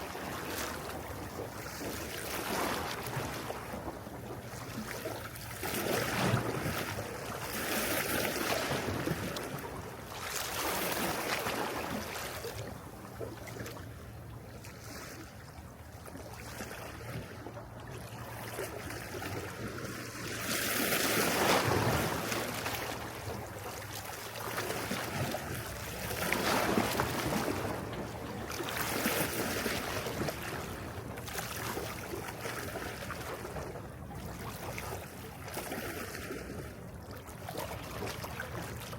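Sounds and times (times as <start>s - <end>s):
sea waves washing onto shore: 19.0s - 33.7s.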